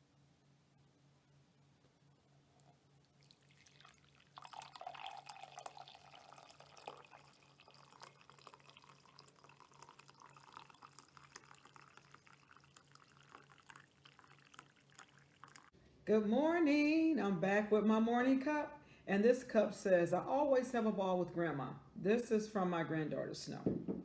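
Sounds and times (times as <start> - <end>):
drink pouring into cup: 2.6 - 15.8.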